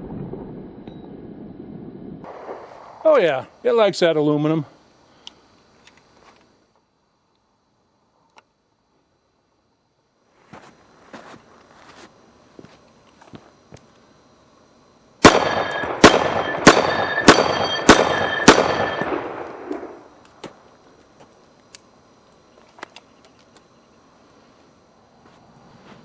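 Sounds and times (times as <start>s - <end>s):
pistol shots with echo: 15.2s - 20.0s.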